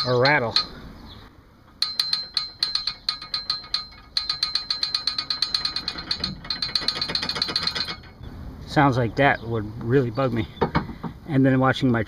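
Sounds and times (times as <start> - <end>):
hitch mount rattling metallic clicks: 0.0 - 0.8, 1.7 - 8.3.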